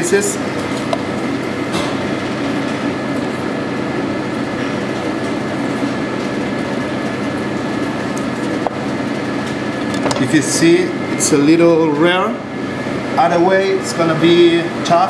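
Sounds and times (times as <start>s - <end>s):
kitchen ventilation humming: 0.0s - 15.0s.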